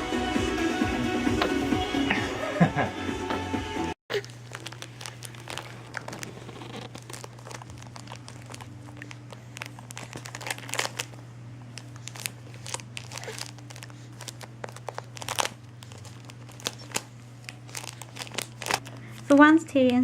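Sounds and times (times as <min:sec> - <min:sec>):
crinkling and crackling: 0:04.1 - 0:20.0
steady low hum: 0:04.1 - 0:20.0.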